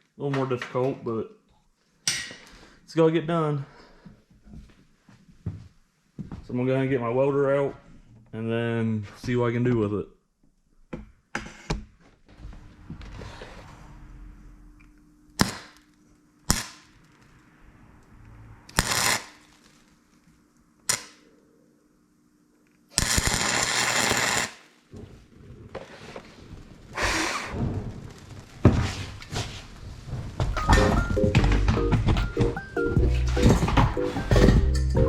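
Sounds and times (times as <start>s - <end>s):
electric welder arcing: 14.9s - 17.5s, 18.7s - 21.4s, 22.9s - 24.9s, 25.9s - 31.6s.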